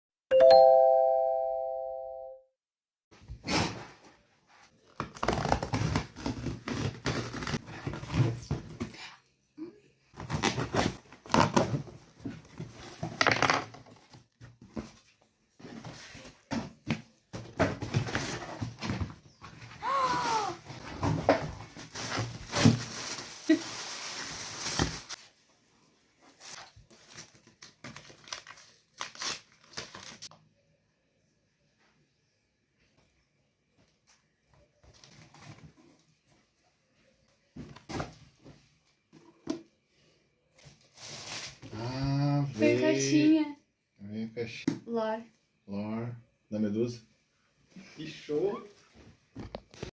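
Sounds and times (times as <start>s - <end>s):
doorbell chime: 0.3s - 2.5s
packaging rustling and tearing: 5.0s - 8.3s, 20.0s - 25.2s, 26.4s - 30.3s.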